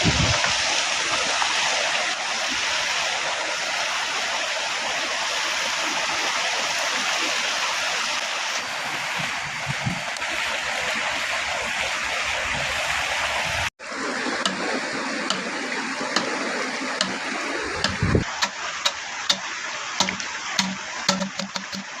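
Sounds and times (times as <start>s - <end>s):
river water rushing: 0.0s - 22.0s
sharp clicks and taps: 17.8s - 22.0s.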